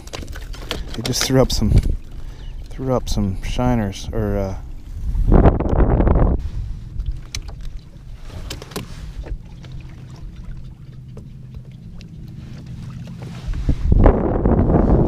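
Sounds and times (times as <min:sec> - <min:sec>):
boat motor droning: 0:00.0 - 0:15.0.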